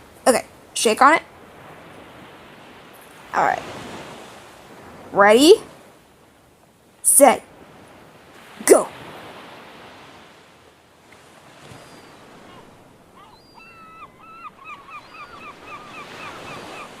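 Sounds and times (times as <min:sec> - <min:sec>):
gull calling: 0:11.6 - 0:17.0.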